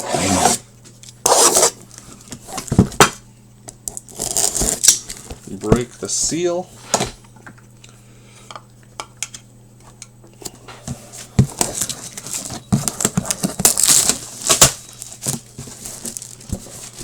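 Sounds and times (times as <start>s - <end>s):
crinkling rustles: 10.9s - 17.0s
box seal breaking: 13.0s - 15.4s.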